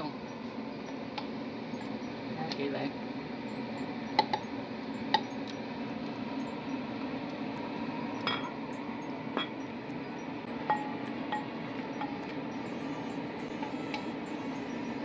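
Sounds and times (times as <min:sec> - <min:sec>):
steady low hum: 0:00.0 - 0:15.0
utensils clinking on dishes: 0:08.2 - 0:08.6, 0:09.4 - 0:09.6.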